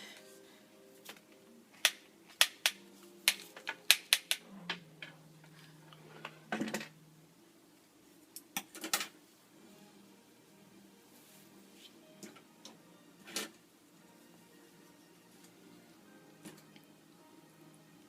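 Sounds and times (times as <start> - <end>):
hair tools clicking and clacking: 1.8 - 4.4.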